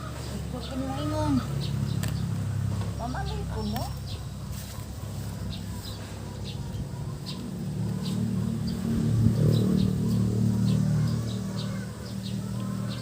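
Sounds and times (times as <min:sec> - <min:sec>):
loud low hum: 0:05.2 - 0:13.0.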